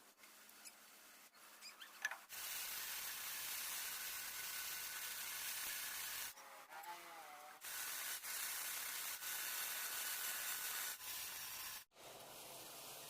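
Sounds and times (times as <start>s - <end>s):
faint squeaky tones: 1.6s - 2.1s.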